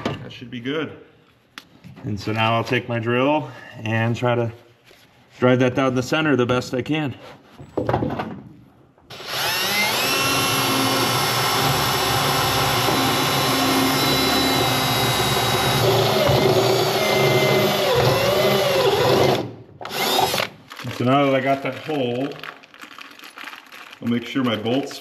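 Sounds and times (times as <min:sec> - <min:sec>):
electric drill cutting through steel: 0:09.1 - 0:20.5.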